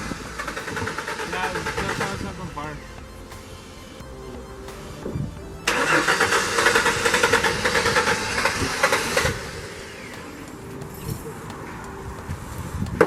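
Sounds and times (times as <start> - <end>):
car starter cranking engine: 5.0 - 12.0.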